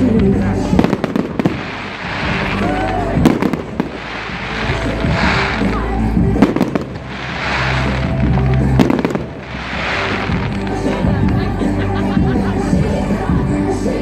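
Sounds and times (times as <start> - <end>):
fireworks crackle: 0.0 - 12.8
fireworks bangs: 0.5 - 11.6.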